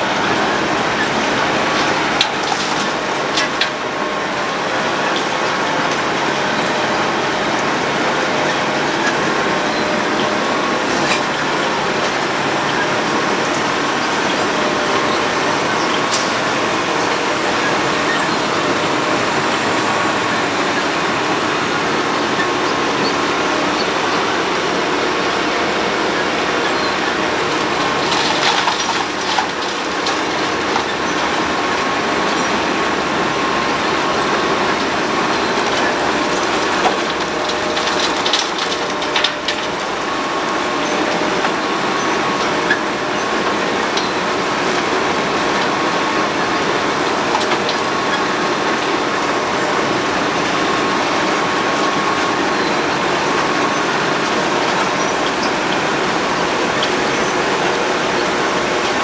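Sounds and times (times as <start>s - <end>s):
road planer machine running: 0.0s - 59.0s
short clatters: 9.0s - 31.5s.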